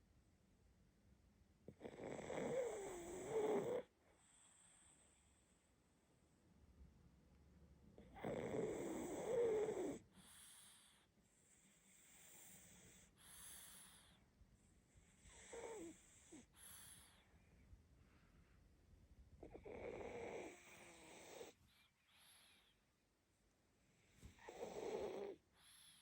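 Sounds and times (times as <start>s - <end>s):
puppy snoring: 1.6s - 5.5s, 8.0s - 14.2s, 14.9s - 17.3s, 19.4s - 22.8s, 23.9s - 26.0s.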